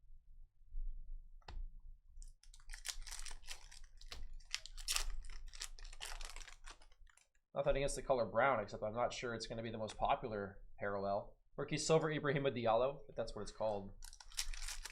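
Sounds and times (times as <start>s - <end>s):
trading cards clicking and rustling: 2.5s - 7.2s, 14.0s - 14.9s.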